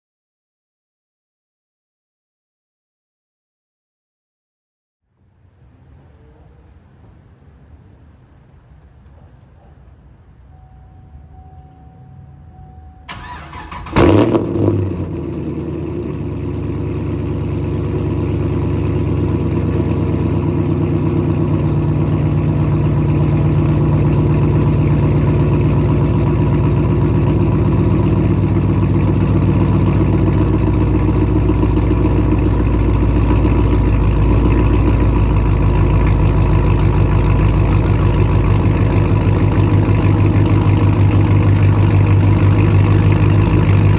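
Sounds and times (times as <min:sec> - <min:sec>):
car engine starting and idling: 0:13.0 - 0:43.9.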